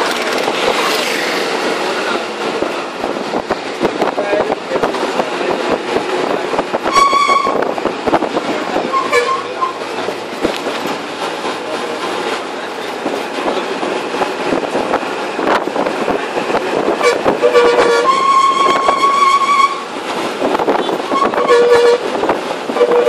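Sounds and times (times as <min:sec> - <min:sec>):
bus engine and road rattle: 0:00.0 - 0:23.0
tyres squealing: 0:08.7 - 0:11.8.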